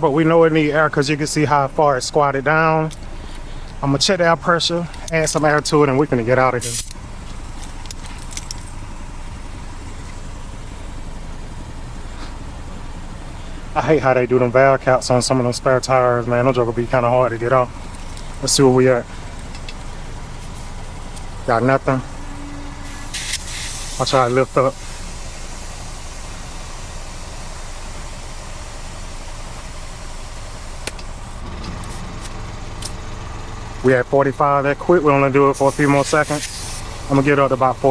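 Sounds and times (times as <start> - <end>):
engine rumbling: 0.0 - 37.9
air compressor hissing: 3.0 - 37.9
light metallic clinks: 6.8 - 8.9
sharp click: 30.8 - 33.0.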